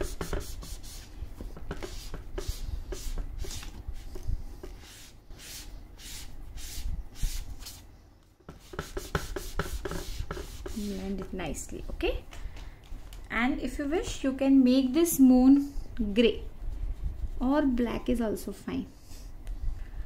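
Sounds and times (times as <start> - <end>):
sponge rubbing on paper: 0.0 - 7.8, 8.5 - 11.3, 16.1 - 18.2.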